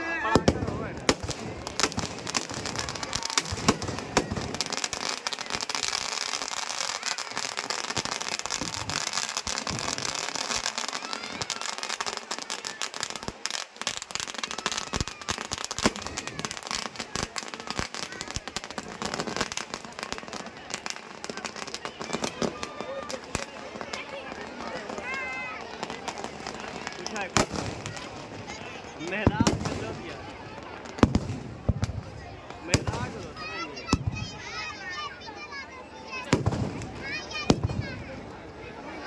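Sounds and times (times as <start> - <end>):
loud firework bangs: 0.0 - 35.1, 36.2 - 38.4
fireworks crackling: 0.0 - 39.0.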